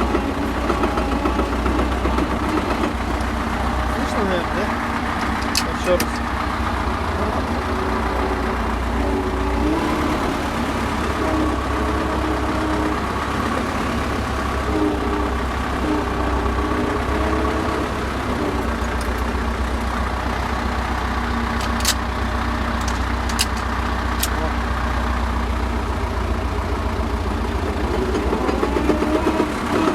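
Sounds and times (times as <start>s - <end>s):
gearbox knocking: 0.0s - 19.5s, 21.4s - 22.1s, 22.7s - 24.5s
diesel tractor engine running: 0.0s - 29.9s.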